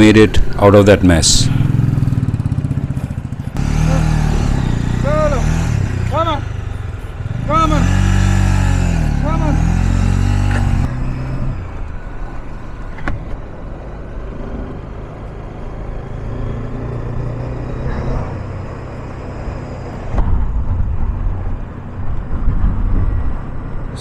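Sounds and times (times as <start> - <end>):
motorcycle engine running: 0.0 - 13.6
wind noise on microphone: 20.0 - 24.0.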